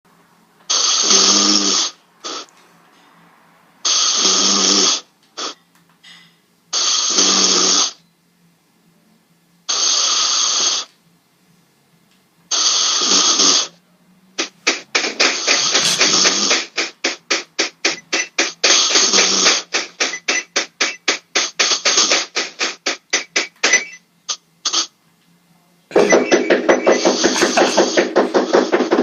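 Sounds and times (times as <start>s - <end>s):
person snoring loudly: 0.7s - 2.4s, 3.9s - 5.1s, 6.9s - 8.0s.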